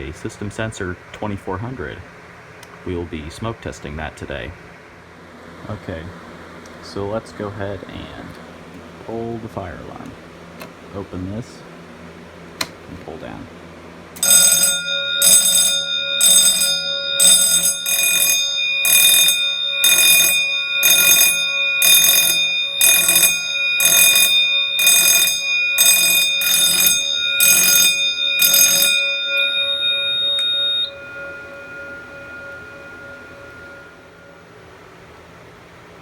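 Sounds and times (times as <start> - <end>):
fire alarm bell ringing: 14.2 - 35.3.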